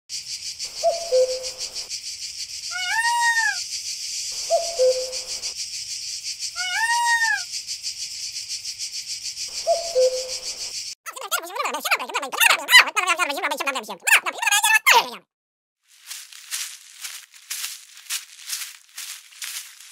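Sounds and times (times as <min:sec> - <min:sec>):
animal arching cry: 0:02.7 - 0:03.6, 0:06.6 - 0:07.5.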